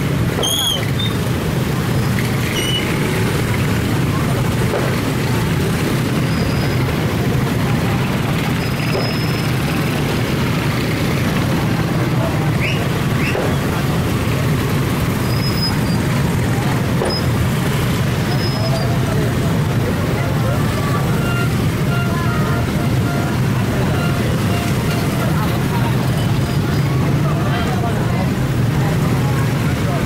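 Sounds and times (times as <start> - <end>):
people chattering: 0.0 - 30.0
road traffic: 0.0 - 30.0.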